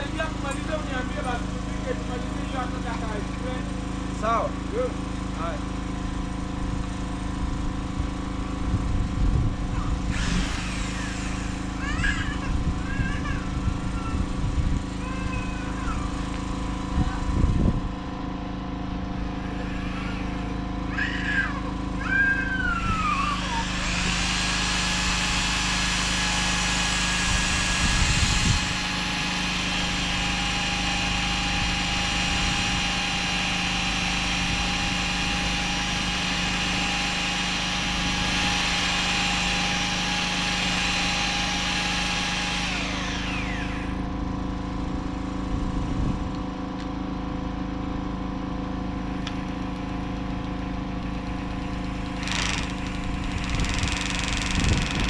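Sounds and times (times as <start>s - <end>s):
electric drill motor running: 0.0s - 4.3s, 5.0s - 17.3s, 19.2s - 44.2s, 51.2s - 55.0s
low engine-like hum: 0.0s - 24.2s, 37.7s - 55.0s.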